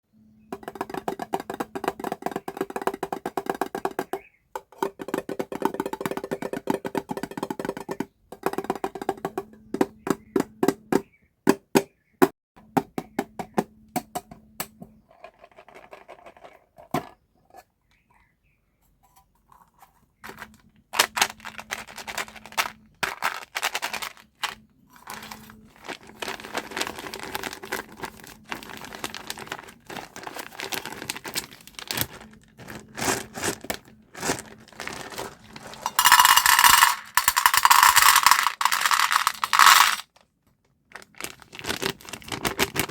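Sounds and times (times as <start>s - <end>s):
candy packaging crinkling: 21.0s - 40.0s, 40.9s - 42.9s.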